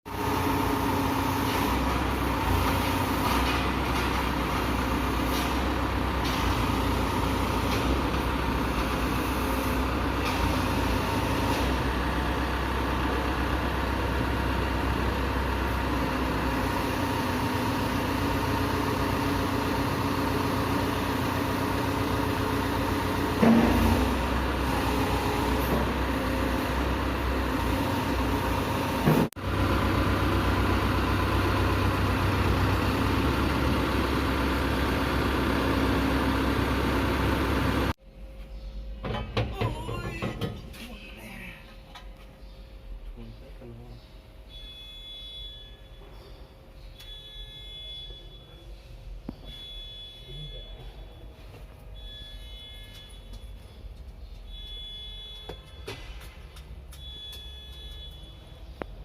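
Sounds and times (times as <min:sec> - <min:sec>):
diesel engine running: 0:00.1 - 0:38.0.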